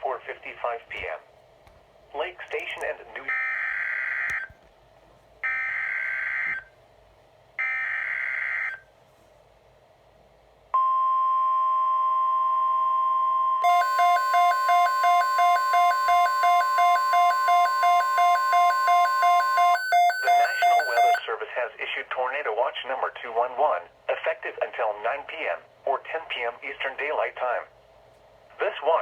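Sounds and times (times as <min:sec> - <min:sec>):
pulsing alarm beep: 0:10.8 - 0:21.2
steady alarm tone: 0:13.6 - 0:21.2.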